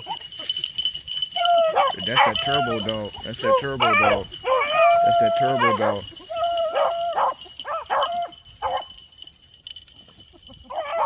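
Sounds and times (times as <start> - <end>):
hounds baying: 0.0 - 11.0.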